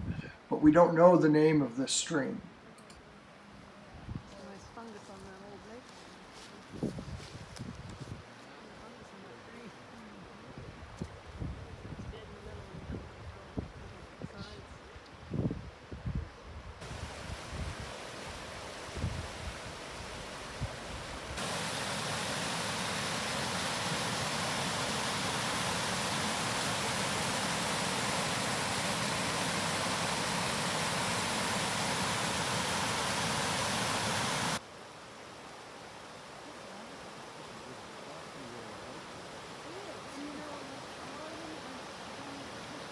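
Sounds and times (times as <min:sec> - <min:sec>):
stream and waterfall rushing: 0:16.8 - 0:42.9.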